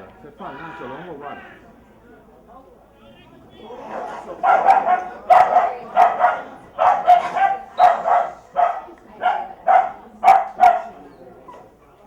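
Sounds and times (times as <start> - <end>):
dog barking: 3.9 - 11.7.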